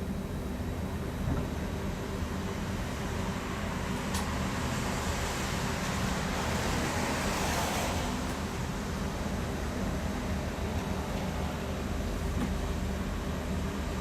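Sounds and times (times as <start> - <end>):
car passing on wet road: 6.4 - 8.3.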